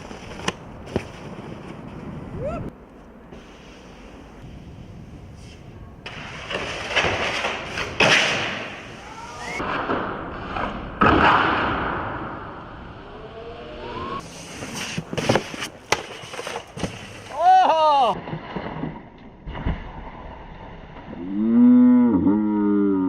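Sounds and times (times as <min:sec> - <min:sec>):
snowboard scraping over snow: 0:14.2 - 0:17.5.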